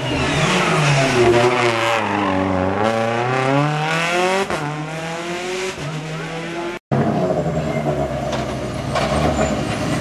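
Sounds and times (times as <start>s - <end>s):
rally car engine revving: 0.0s - 10.0s.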